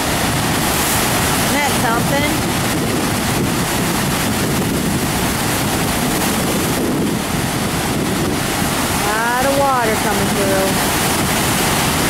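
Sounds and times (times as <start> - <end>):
water rushing through spillway: 0.0 - 12.0
wind buffeting microphone: 0.0 - 12.0.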